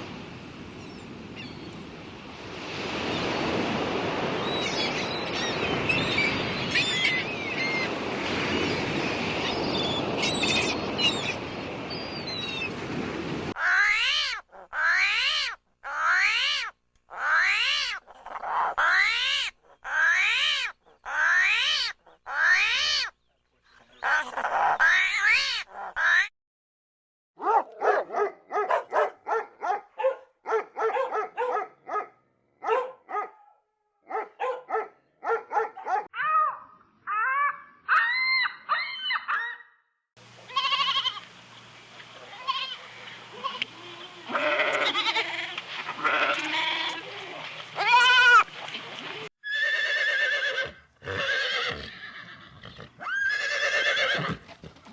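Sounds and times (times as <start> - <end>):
longer animal calls: 13.6 - 23.1, 23.8 - 26.3
short pitched animal cries: 13.6 - 23.1, 24.0 - 26.3.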